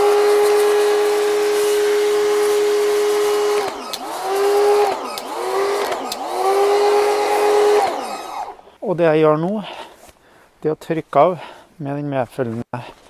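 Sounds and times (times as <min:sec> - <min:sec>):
electric pressure washer spraying: 0:00.0 - 0:08.6.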